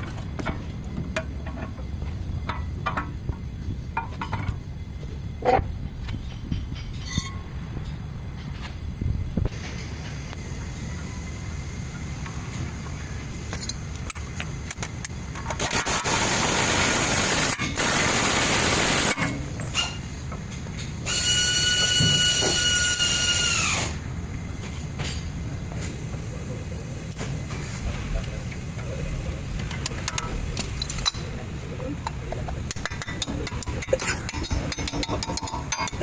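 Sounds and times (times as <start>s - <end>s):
hissing bursts: 15.6s - 19.9s
whining power tool: 21.1s - 24.0s.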